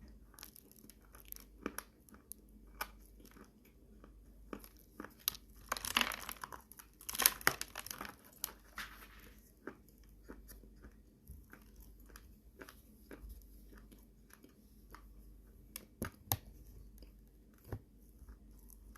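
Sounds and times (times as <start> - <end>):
dry clay crunching and crumbling: 4.5 - 15.1.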